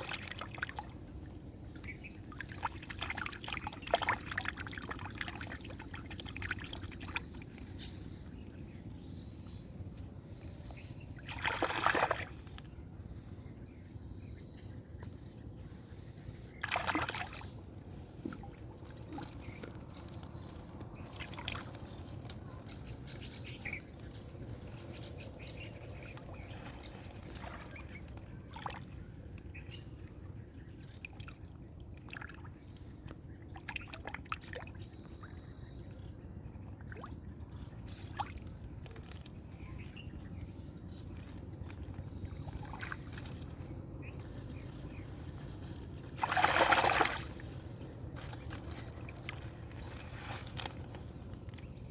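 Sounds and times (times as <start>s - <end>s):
small water splashes: 0.0s - 8.2s, 10.4s - 12.8s, 16.4s - 22.2s, 25.9s - 29.9s, 30.9s - 35.5s, 36.6s - 39.9s, 41.2s - 43.7s, 44.4s - 51.8s
river water trickling: 0.0s - 51.9s.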